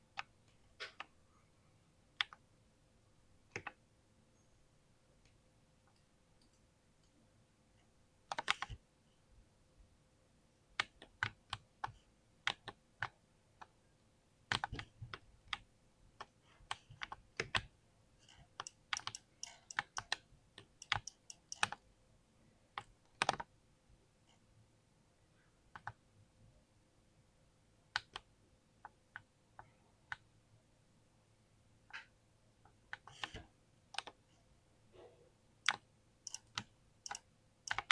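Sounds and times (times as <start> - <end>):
mechanical keyboard typing: 18.6 - 21.8, 35.7 - 37.9.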